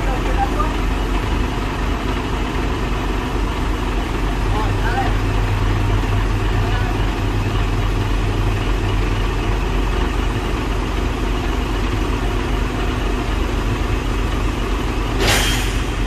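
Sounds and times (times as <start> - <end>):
vehicle engine humming: 0.0 - 16.0
short hiss: 15.2 - 16.0.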